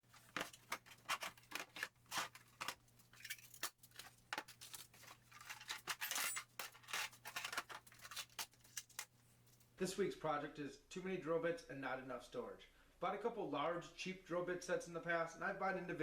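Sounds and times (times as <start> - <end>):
rasping scrape: 0.2 - 2.8.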